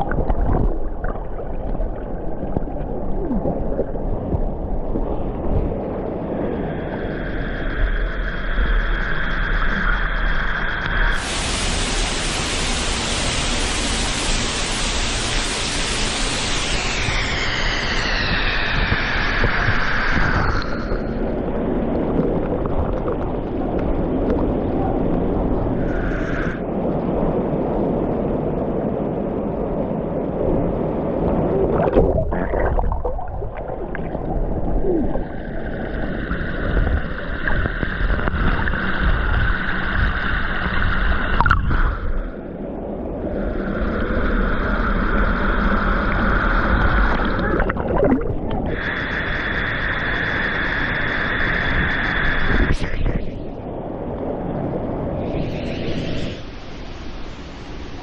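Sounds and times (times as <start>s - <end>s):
bright hiss: 8.4s - 21.4s.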